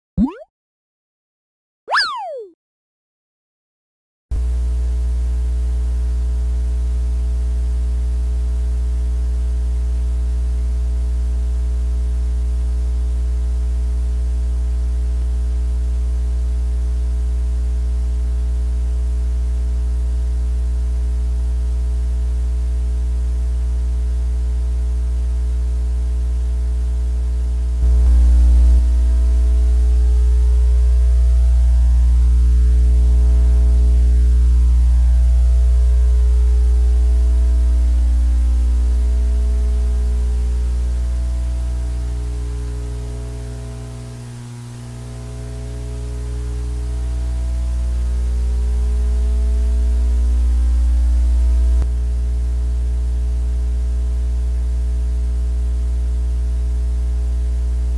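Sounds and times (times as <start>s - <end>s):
tones sweeping in pitch: 0.2s - 0.5s, 1.9s - 2.5s.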